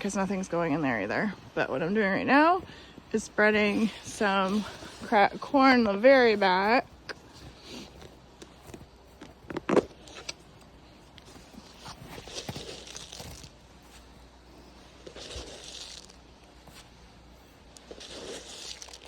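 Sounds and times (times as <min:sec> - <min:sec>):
corn scattering over snow: 0:11.7 - 0:13.6, 0:15.0 - 0:16.3, 0:17.8 - 0:19.0.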